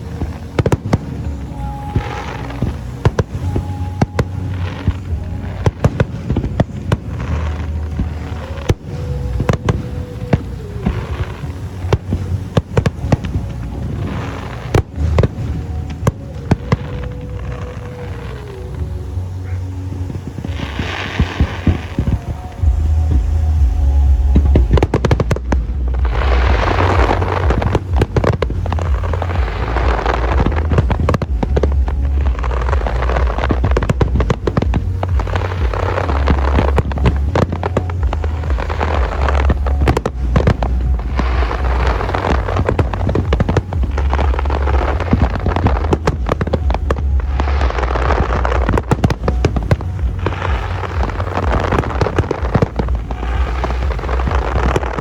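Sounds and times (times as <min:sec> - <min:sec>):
fireworks bangs and crackling: 0:00.0 - 0:55.0
heavy low rumble: 0:00.0 - 0:55.0.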